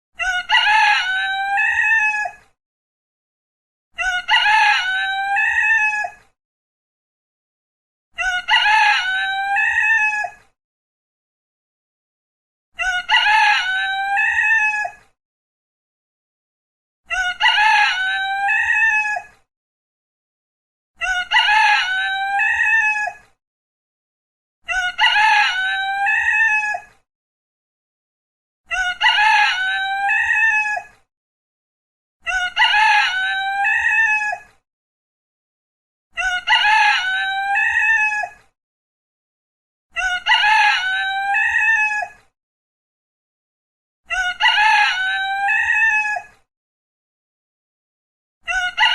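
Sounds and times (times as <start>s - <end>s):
rooster crowing: 8.3s - 10.3s, 21.1s - 23.1s, 24.8s - 26.8s, 36.2s - 38.4s, 40.1s - 42.1s.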